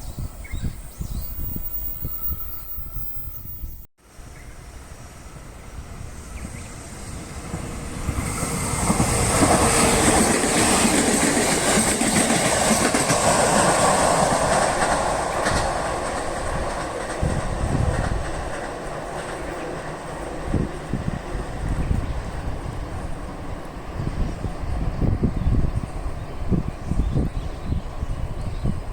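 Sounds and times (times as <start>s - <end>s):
train wheels rumbling and clattering: 5.9s - 28.9s.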